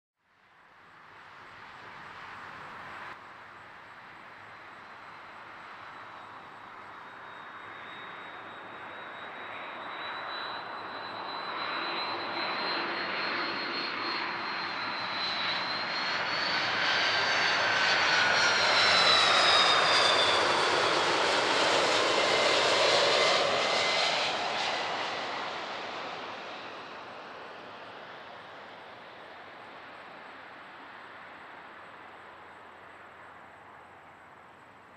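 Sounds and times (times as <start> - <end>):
jet engines whining rush: 5.7 - 33.0.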